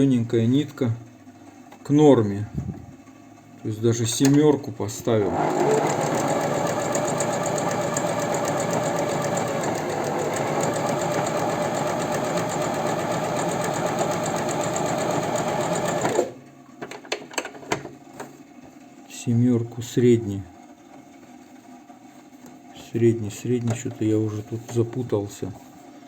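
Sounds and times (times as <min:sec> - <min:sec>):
sewing machine running: 0:05.2 - 0:16.3.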